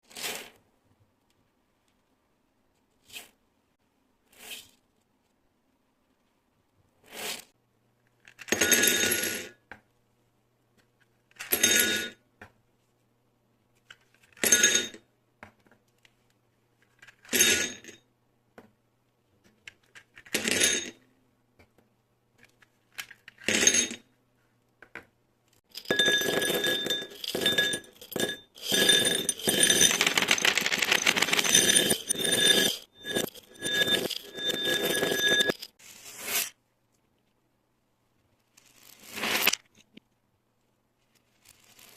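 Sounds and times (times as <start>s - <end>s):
beads clattering on hard surface: 25.7s - 35.8s, 38.7s - 39.6s.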